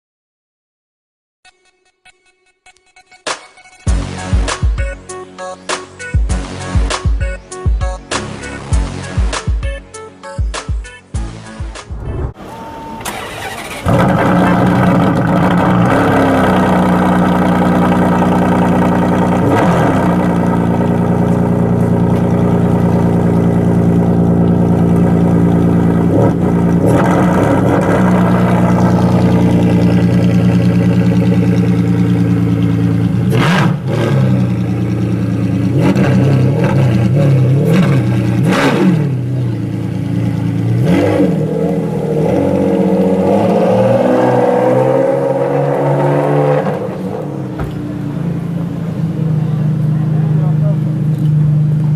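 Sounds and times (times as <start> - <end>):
car engine starting and revving: 11.9 - 51.9
engine cranking: 13.0 - 41.0.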